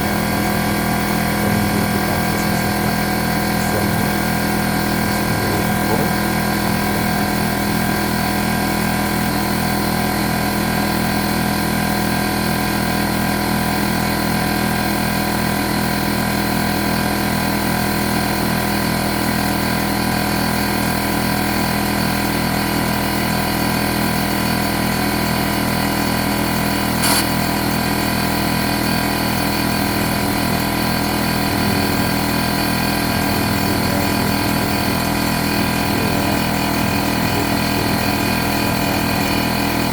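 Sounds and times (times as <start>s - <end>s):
air compressor running: 0.0s - 39.9s
short sharp click: 27.0s - 27.4s.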